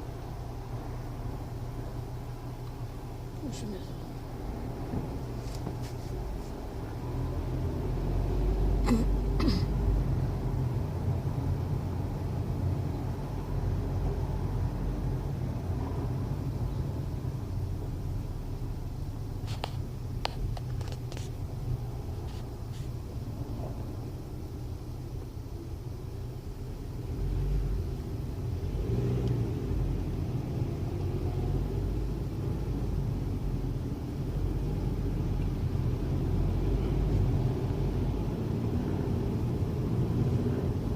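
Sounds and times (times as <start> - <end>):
road and engine rumble in car: 0.0 - 40.9.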